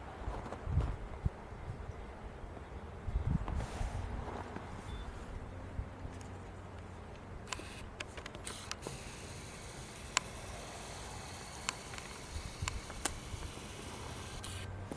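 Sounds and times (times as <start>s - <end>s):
low wind rumble: 0.0s - 6.6s
sharp short clicks: 7.5s - 14.8s.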